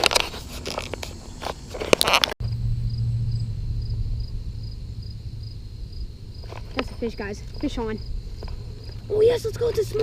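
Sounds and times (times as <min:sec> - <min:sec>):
handling clicks and rustles: 0:00.0 - 0:02.4
high insect chirps: 0:00.6 - 0:10.0
low steady hum: 0:02.4 - 0:09.6.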